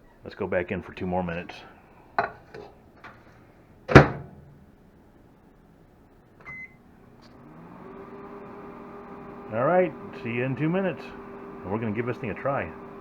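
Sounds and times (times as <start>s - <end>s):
microwave door shutting: 3.9s - 4.4s
keypad beep: 6.4s - 6.8s
microwave oven humming: 6.4s - 13.0s.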